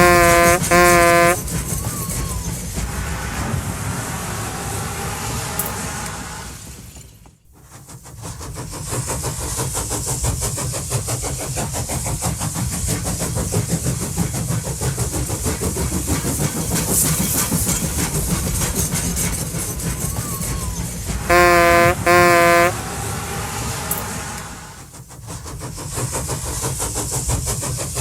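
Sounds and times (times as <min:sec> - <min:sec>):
engine running with rapid pulsing: 0:00.0 - 0:01.5.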